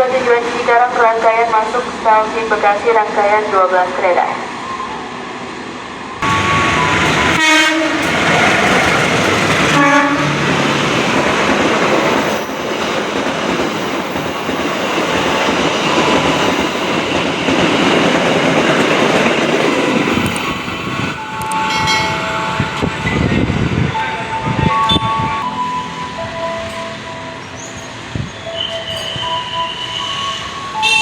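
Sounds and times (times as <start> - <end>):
train cars rumbling past: 2.1 - 31.0
train horn blasts: 6.2 - 8.4, 9.7 - 10.6, 21.2 - 27.5, 28.6 - 31.0.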